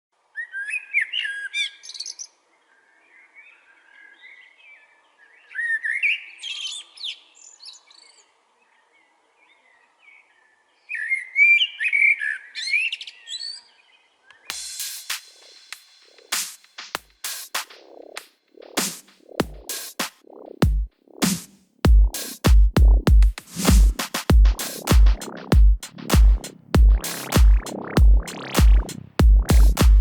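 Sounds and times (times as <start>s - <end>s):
soft bird twittering: 0.4s - 14.6s
songbirds warbling: 0.4s - 14.6s.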